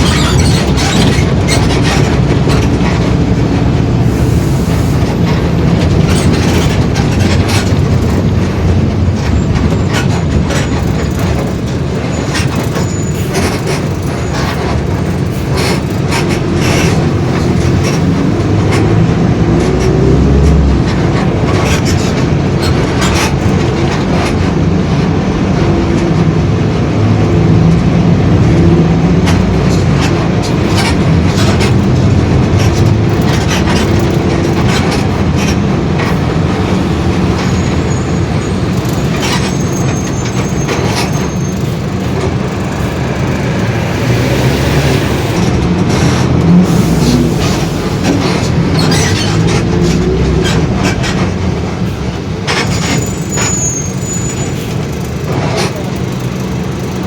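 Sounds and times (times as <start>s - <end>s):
rattles and knocks: 0.0s - 4.0s, 5.0s - 46.7s
bus diesel engine droning: 0.0s - 57.0s
differential growling: 42.7s - 50.7s.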